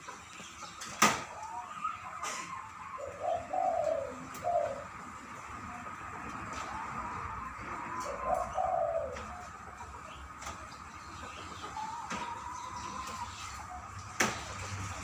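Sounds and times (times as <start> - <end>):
dove cooing: 1.8 - 10.0.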